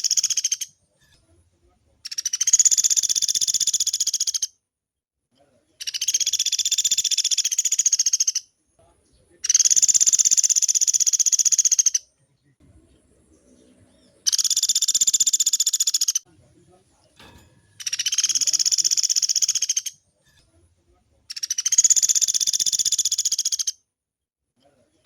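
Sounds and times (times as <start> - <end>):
woodpecker rattling trills: 2.1 - 4.5, 5.8 - 8.4, 9.5 - 12.0, 14.2 - 16.2, 17.8 - 20.0, 21.3 - 23.7.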